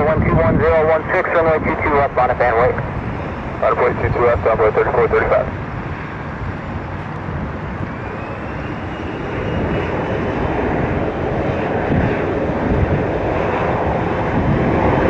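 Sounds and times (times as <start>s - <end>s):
jet engine noise: 0.0s - 15.0s.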